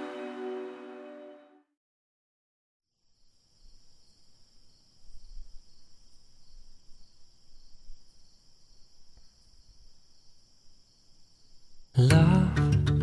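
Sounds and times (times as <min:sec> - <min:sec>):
insects chirring: 0:03.0 - 0:12.0.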